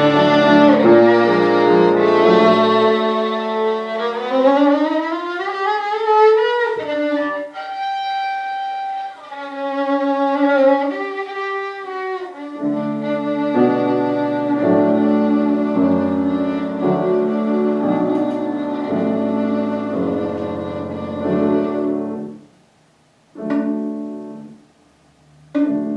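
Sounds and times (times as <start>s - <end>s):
low accompanying chords: 0.0s - 5.3s, 12.4s - 22.6s
violin playing slow notes: 0.0s - 22.4s.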